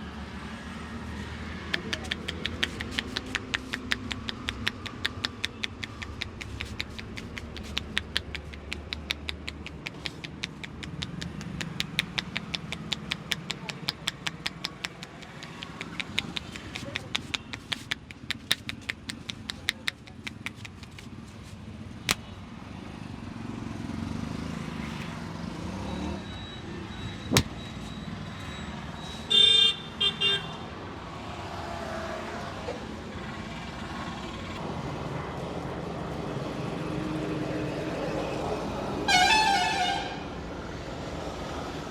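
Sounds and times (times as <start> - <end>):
street traffic: 0.0 - 41.9
sharp snaps: 1.6 - 21.5, 22.1 - 22.4, 27.3 - 27.6
hand slaps: 1.7 - 21.2, 27.3 - 27.5
vehicle horn tooting: 29.3 - 30.6, 39.1 - 40.2.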